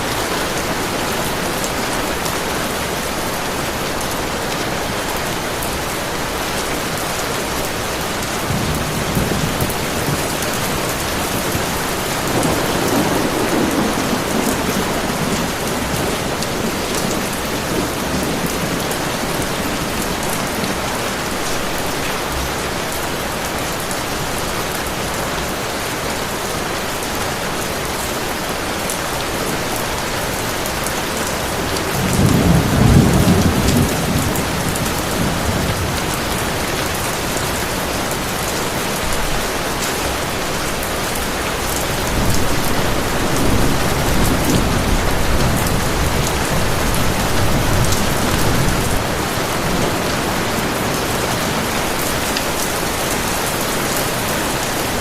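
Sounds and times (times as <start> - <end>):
heavy rain falling: 0.0 - 55.0
rolling thunder rumble: 8.2 - 21.1, 31.3 - 38.2, 41.8 - 55.0.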